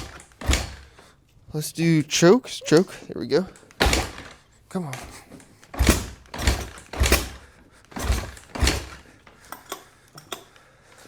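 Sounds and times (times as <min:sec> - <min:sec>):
dirt bike being kick-started: 0:00.0 - 0:01.1, 0:03.6 - 0:10.5.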